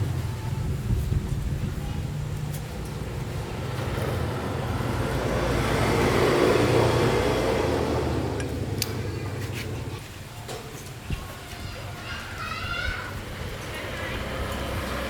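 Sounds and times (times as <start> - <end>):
vehicle engine passing by: 0.0 - 10.0, 13.3 - 15.0.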